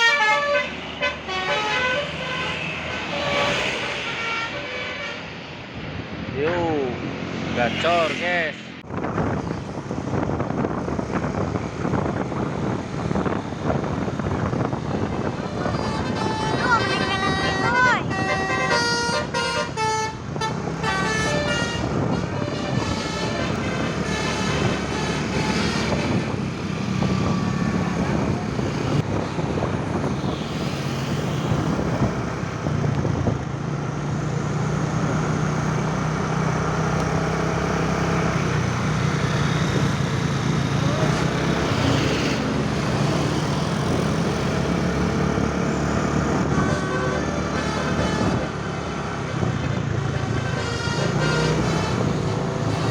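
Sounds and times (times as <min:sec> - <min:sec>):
multi-tone bus horn: 0:00.0 - 0:05.4, 0:15.5 - 0:26.5, 0:46.2 - 0:52.9
road noise: 0:00.0 - 0:52.9.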